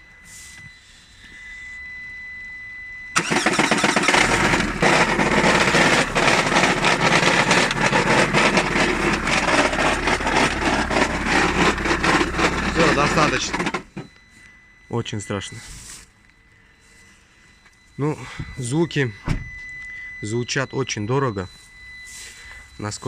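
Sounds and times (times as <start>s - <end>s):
faint steady high tone: 0.0s - 23.0s
engine knocking clatter: 3.2s - 13.8s
car engine cranking and starting: 3.2s - 14.0s.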